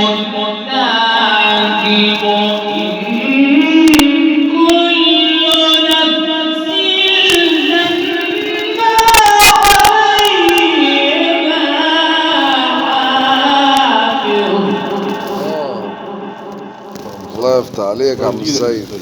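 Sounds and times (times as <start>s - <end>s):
man reciting melodically: 4.6s - 15.8s, 17.0s - 19.0s
cluster of clicks: 6.7s - 10.8s, 12.2s - 15.6s, 16.2s - 19.0s.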